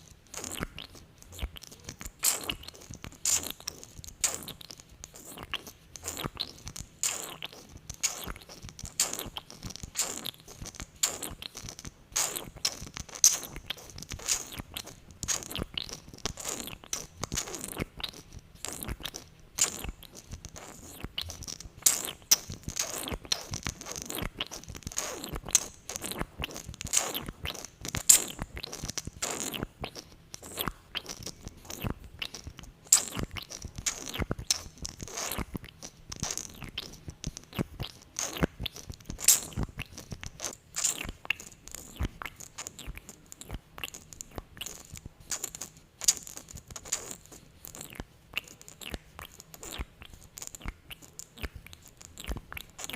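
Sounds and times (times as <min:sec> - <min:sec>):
wet lip smacking: 0:00.0 - 0:52.9.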